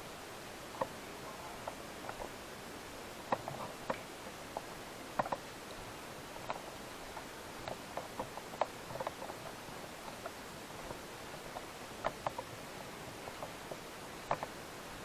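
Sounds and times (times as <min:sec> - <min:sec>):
steady hiss: 0:00.0 - 0:15.0
light clicks and ticks: 0:06.4 - 0:12.6, 0:13.2 - 0:14.6.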